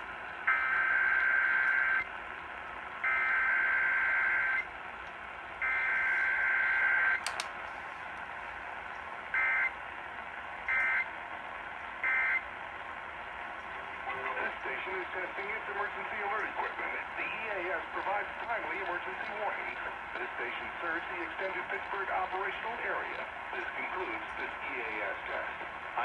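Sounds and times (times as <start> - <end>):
click: 7.2 - 7.6.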